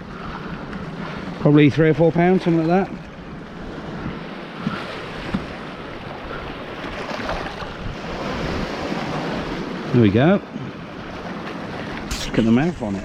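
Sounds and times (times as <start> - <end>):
waves and surf washing: 0.0 - 13.0
wind buffeting microphone: 3.5 - 10.0.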